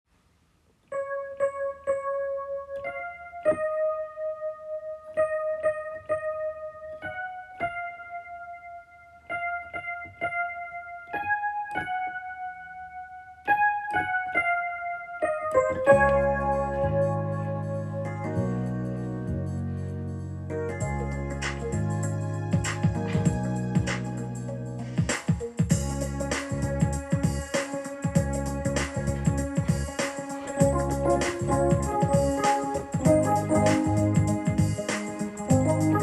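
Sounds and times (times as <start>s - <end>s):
keyboard melody: 0.8s - 36.0s
fuller accompaniment with bass: 15.6s - 36.0s.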